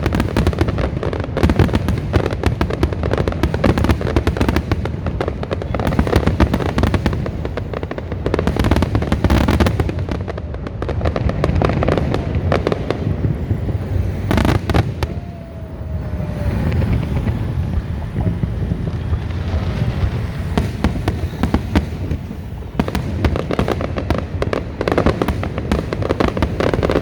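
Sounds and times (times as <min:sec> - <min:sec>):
fireworks bangs and crackling: 0:00.0 - 0:27.0
low rumbling booms: 0:01.7 - 0:27.0
faint falling whistle: 0:13.8 - 0:17.9.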